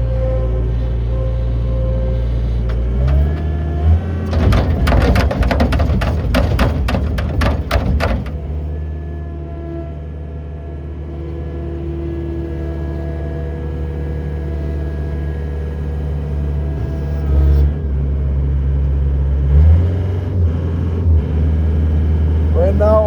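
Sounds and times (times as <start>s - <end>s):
diesel engine running: 0.0s - 23.0s
low thuds: 2.2s - 9.0s.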